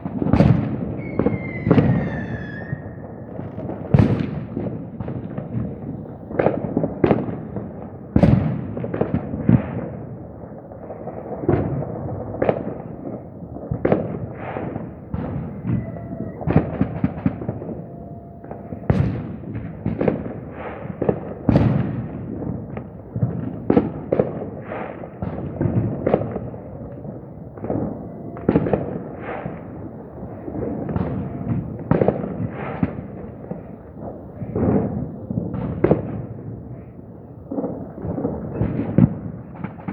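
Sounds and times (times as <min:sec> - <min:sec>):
fireworks and firecrackers banging: 0:00.0 - 0:39.9.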